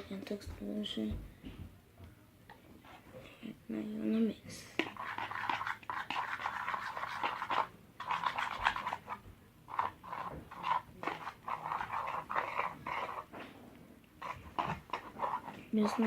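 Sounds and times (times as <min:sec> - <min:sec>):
slime squelching in a bowl: 0:04.7 - 0:13.5, 0:14.1 - 0:16.0.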